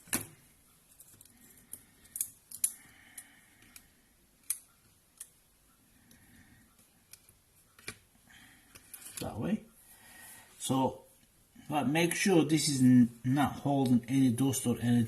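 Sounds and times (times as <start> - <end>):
clicks and taps of small parts: 3.6 - 5.4.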